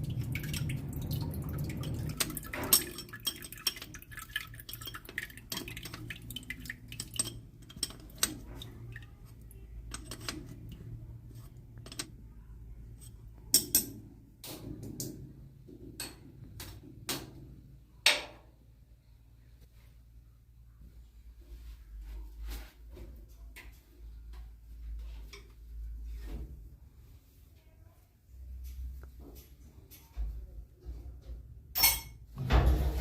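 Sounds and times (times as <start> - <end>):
metal objects clinking: 0.2 - 9.1, 9.9 - 12.1, 31.8 - 32.2.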